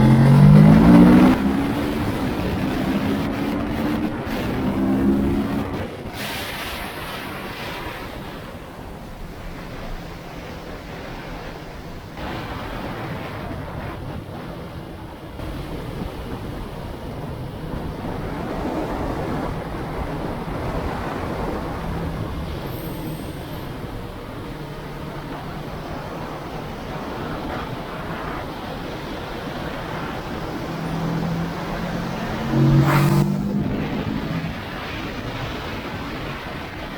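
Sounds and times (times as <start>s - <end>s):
faint motorcycle engine: 0.0s - 6.1s
wind roaring over microphone: 0.0s - 36.9s.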